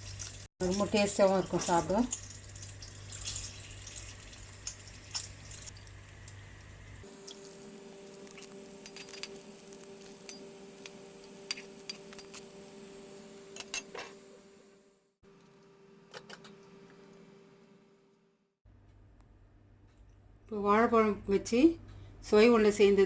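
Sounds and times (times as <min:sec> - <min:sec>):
utensils clinking against dishes: 0:13.6 - 0:14.2.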